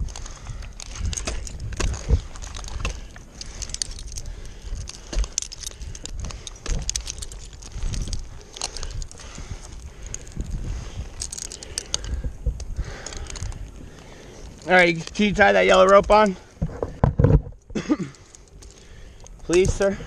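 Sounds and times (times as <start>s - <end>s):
metal climbing gear jingling: 0.0s - 20.0s
rustling: 0.0s - 20.0s.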